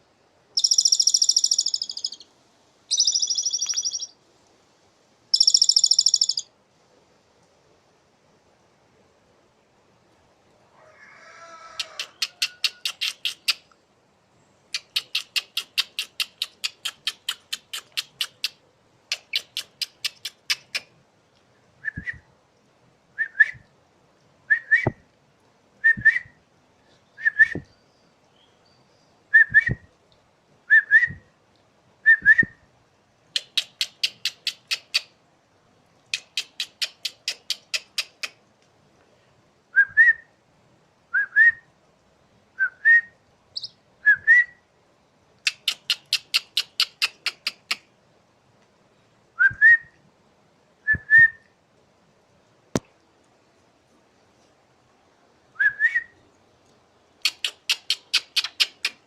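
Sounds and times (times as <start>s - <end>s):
short rising whistles: 25.8s - 26.4s, 27.2s - 27.7s, 44.0s - 44.6s, 49.4s - 50.0s, 50.8s - 51.5s, 55.6s - 56.2s.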